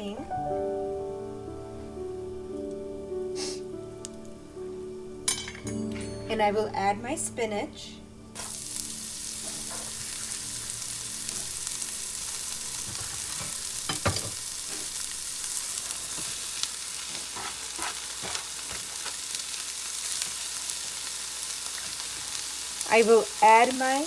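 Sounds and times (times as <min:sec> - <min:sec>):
spinach sizzling in oil: 0:08.3 - 0:24.0.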